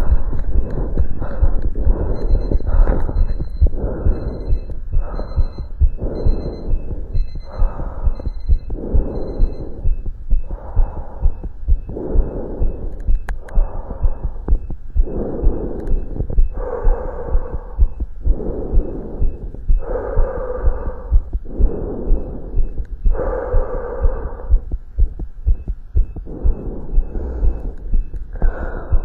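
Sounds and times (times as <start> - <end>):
hard breathing through stethoscope: 0.0 - 29.0
heartbeat through stethoscope: 0.0 - 29.0.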